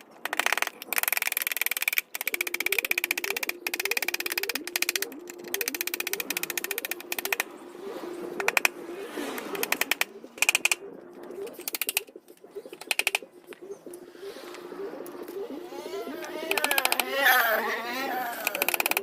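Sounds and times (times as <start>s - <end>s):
hand ratchet clicking: 16.5s - 17.1s, 18.4s - 19.0s.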